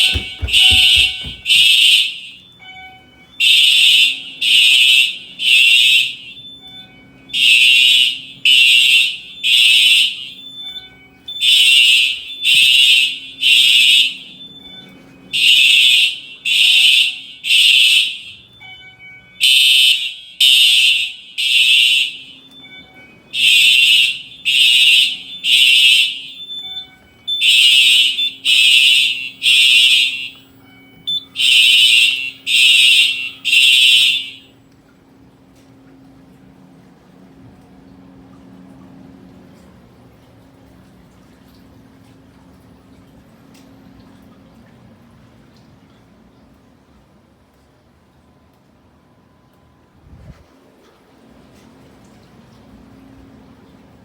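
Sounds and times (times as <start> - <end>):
fire alarm buzzy tone pulses: 0.0 - 39.6.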